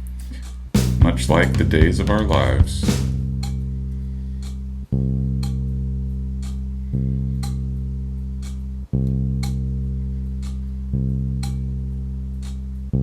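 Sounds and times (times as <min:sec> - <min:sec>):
analog clock ticking: 0:00.0 - 0:03.7, 0:04.4 - 0:04.6, 0:05.4 - 0:05.8, 0:06.4 - 0:06.6, 0:07.4 - 0:07.6, 0:08.4 - 0:08.7, 0:09.4 - 0:09.7, 0:10.4 - 0:10.6, 0:11.4 - 0:11.8, 0:12.4 - 0:12.7
bass guitar note: 0:00.0 - 0:13.0.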